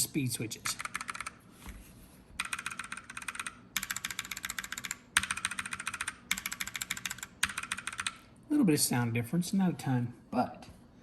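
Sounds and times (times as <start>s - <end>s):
mechanical keyboard typing: 0.6s - 1.4s, 2.4s - 8.2s.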